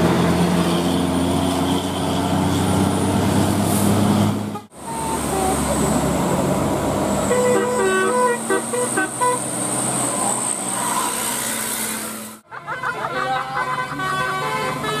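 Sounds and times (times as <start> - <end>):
engine and traffic rumble: 0.0 - 15.0
bus horn tooting melody: 4.4 - 6.0, 7.2 - 9.6, 13.5 - 15.0.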